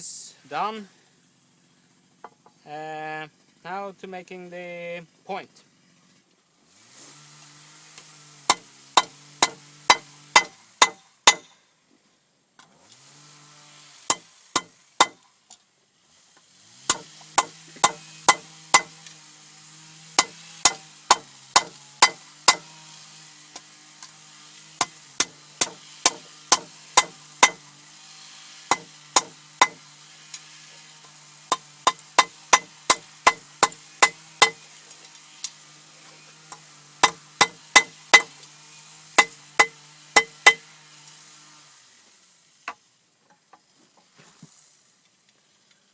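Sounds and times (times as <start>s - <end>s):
hammer striking iron on anvil: 8.5s - 11.6s, 14.1s - 15.2s, 16.9s - 19.0s, 20.2s - 22.7s, 24.8s - 27.7s, 28.7s - 29.8s, 31.5s - 34.7s, 36.5s - 38.4s, 39.2s - 40.6s.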